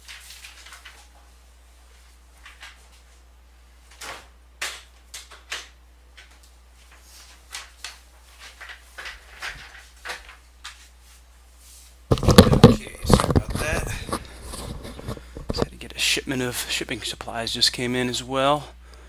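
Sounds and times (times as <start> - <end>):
low steady hum: 10.4 - 19.0
objects knocking and clicking: 12.1 - 15.7.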